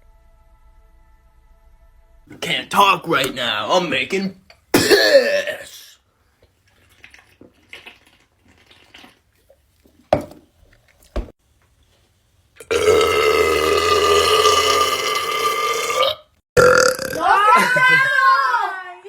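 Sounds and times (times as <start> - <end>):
man belching: 4.8 - 6.0, 12.7 - 17.2.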